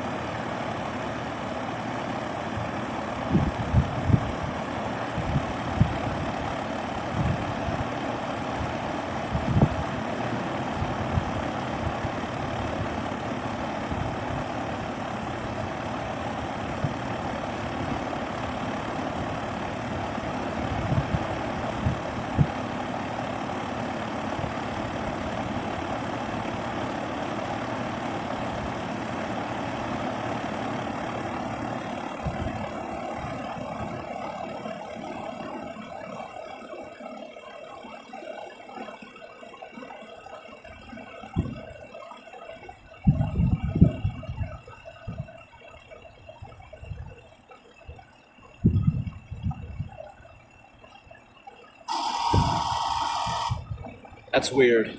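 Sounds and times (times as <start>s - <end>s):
heat pump running: 0.0s - 54.9s.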